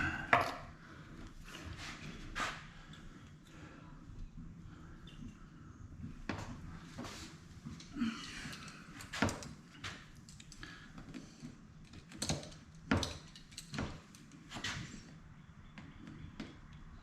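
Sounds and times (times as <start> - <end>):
sharp handling clicks and knocks: 8.5 - 14.8.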